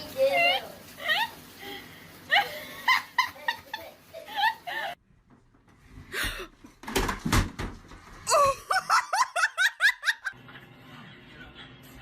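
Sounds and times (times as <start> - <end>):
person laughing hard: 8.3 - 10.3.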